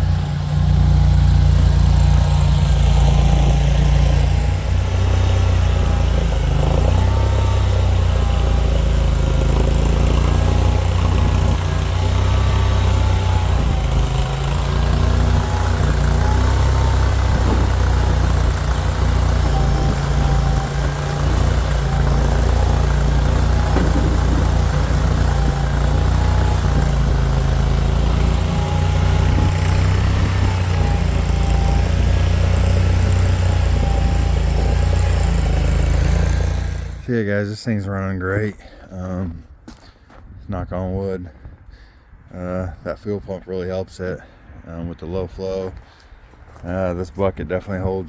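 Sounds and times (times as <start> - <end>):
wavering whine: 0.0 - 37.1
skid steer engine running: 0.0 - 37.3.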